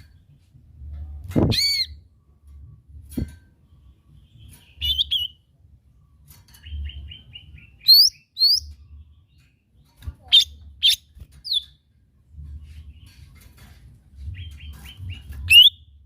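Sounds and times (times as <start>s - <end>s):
faint low rumble: 0.0s - 4.9s
bird singing: 3.7s - 11.8s, 14.2s - 16.0s.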